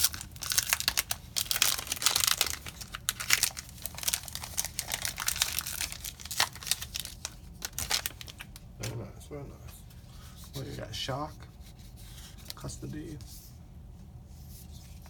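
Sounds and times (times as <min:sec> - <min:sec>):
foil wrapper tearing and crinkling: 0:00.0 - 0:08.6.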